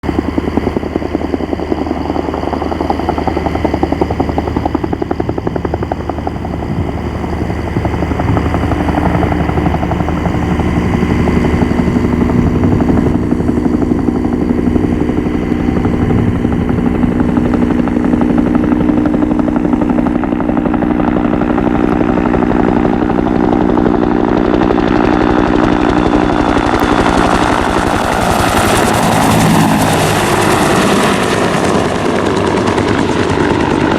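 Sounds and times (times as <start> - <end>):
helicopter rotor chopping: 0.0 - 33.9
steady droning tone: 0.1 - 31.8
rushing noise: 26.6 - 31.7.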